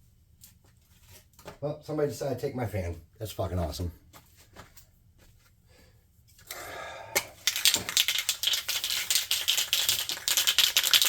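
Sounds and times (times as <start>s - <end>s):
fast steady rattling: 7.5s - 11.0s.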